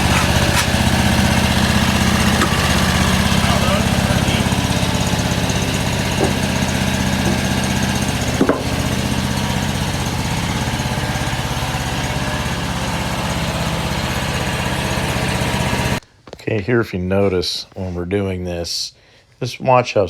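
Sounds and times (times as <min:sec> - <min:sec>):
blade sawing through log: 0:00.0 - 0:16.0
sawmill engine running: 0:00.0 - 0:16.0.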